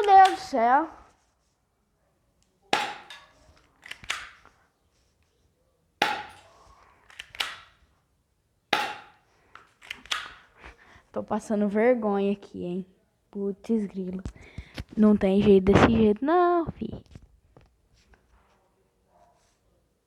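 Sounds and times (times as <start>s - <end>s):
airsoft gun shots: 0.0s - 0.6s, 2.7s - 4.5s, 6.0s - 7.8s, 8.7s - 9.3s, 9.9s - 10.4s.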